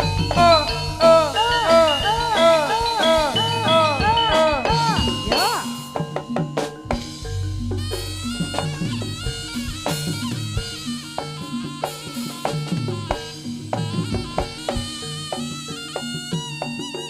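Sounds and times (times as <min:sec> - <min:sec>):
reedy wind melody: 0:00.0 - 0:16.0
rhythmic drumming: 0:00.0 - 0:17.0.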